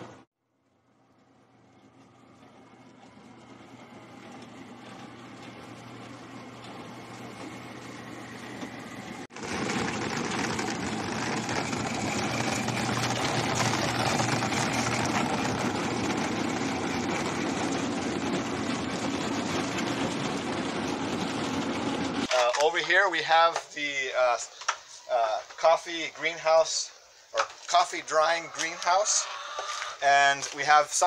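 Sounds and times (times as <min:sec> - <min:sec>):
machine motor drone: 0:00.9 - 0:22.3.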